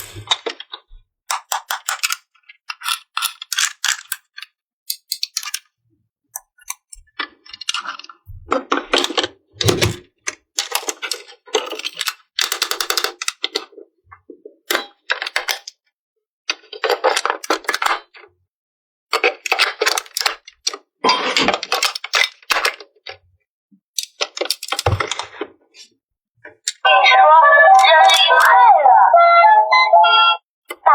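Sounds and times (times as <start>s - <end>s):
plastic toy pieces clicking: 1.3s - 5.7s, 6.4s - 7.0s, 9.8s - 13.7s, 14.7s - 15.8s, 16.8s - 18.1s, 19.2s - 20.8s, 21.4s - 22.8s, 24.0s - 25.2s, 26.6s - 26.9s.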